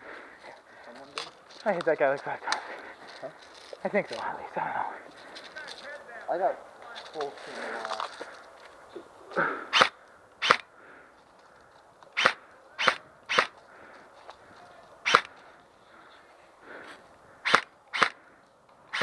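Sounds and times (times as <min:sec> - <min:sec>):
airsoft guns firing pops: 0:09.8 - 0:10.7, 0:12.1 - 0:13.6, 0:15.1 - 0:15.3, 0:17.4 - 0:18.2.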